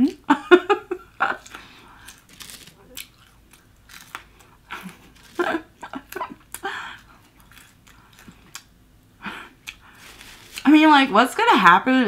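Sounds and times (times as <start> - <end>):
person chewing food: 0.9 - 10.7
soft crunches: 1.4 - 5.6, 9.7 - 10.7.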